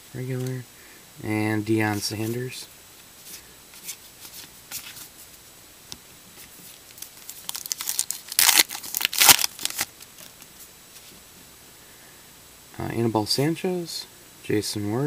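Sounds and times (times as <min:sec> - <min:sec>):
cards rustling: 0:01.7 - 0:02.6, 0:03.2 - 0:05.4, 0:06.4 - 0:11.2
card wrapper crinkling and tearing: 0:06.8 - 0:10.5.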